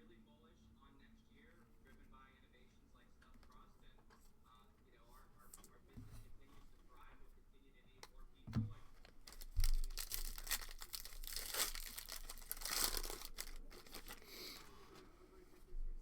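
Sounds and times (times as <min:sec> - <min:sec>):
packaging tearing and crinkling: 0:09.0 - 0:14.2.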